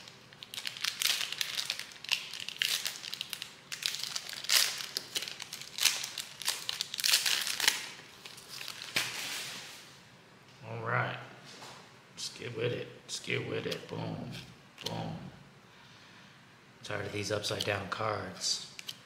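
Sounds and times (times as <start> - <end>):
foil wrapper crinkling: 0.0 - 9.7.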